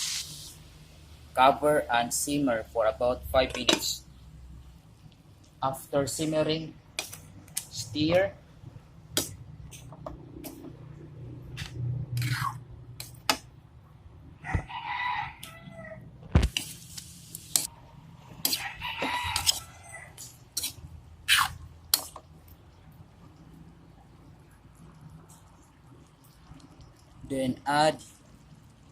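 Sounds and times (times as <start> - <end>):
rooster crowing: 14.4 - 16.1, 18.5 - 20.2
spoon scraping a cooking pan: 16.4 - 17.7, 18.3 - 22.3.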